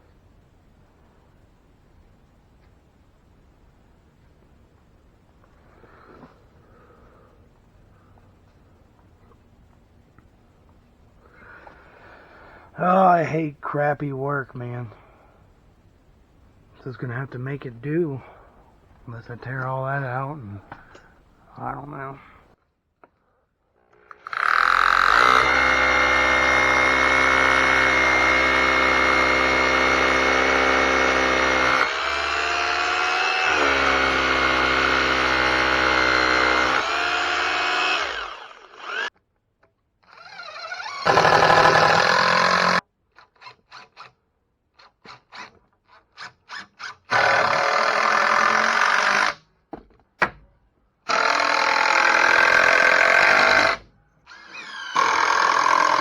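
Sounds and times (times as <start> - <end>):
power tool motor running: 24.2 - 39.1, 40.1 - 42.8, 46.5 - 49.4, 51.1 - 56.0.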